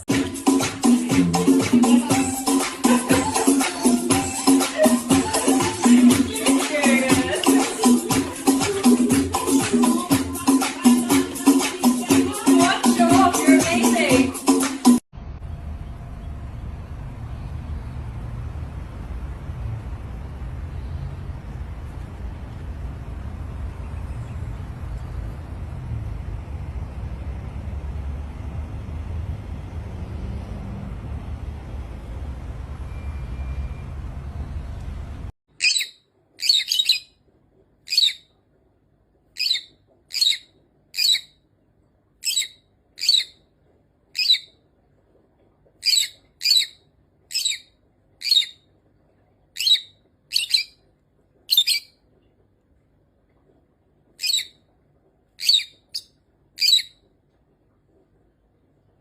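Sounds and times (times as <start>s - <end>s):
steady low noise: 15.2s - 35.3s
parrot chirping: 35.5s - 37.2s, 37.8s - 38.3s, 39.3s - 41.4s, 42.2s - 43.4s, 44.1s - 44.6s, 45.8s - 48.7s, 49.6s - 50.9s, 51.5s - 52.0s, 54.2s - 54.7s, 55.4s - 57.1s.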